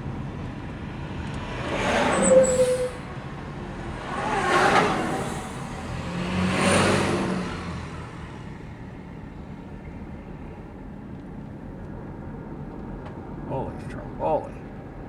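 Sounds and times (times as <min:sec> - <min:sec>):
trucks passing: 0:00.0 - 0:09.6.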